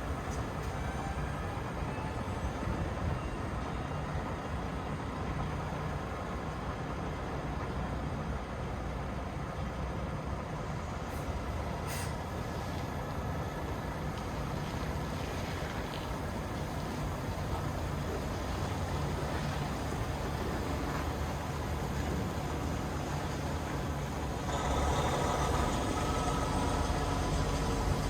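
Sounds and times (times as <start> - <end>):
wind and road noise hiss: 0.0 - 28.0
diesel engine running: 11.0 - 28.0
short hiss: 11.1 - 12.3.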